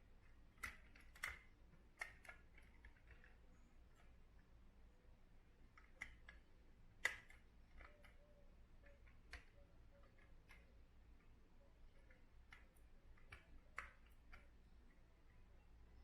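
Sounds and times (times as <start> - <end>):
model car and packaging clicks: 0.2 - 3.4, 5.7 - 8.2, 8.8 - 10.7, 11.9 - 14.6.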